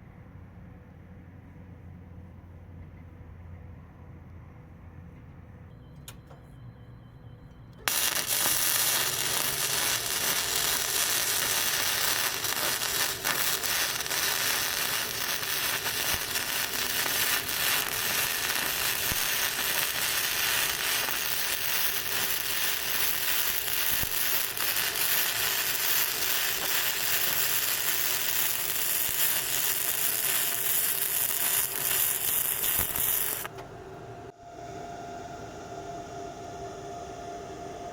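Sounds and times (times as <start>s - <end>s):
welding arc crackling and sizzling: 7.8s - 33.6s.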